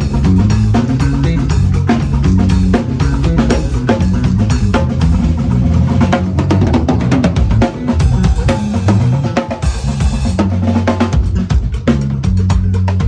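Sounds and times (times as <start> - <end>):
sustained low bass tone: 0.0 - 6.6
drum kit fills: 0.0 - 13.0.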